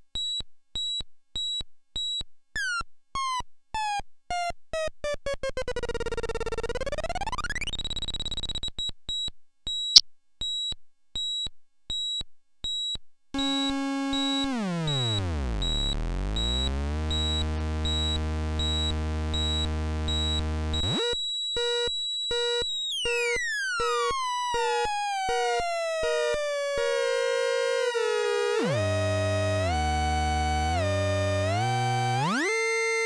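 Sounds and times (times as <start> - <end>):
buzzy synthesizer drone: 13.9 - 21.0, 26.0 - 33.0.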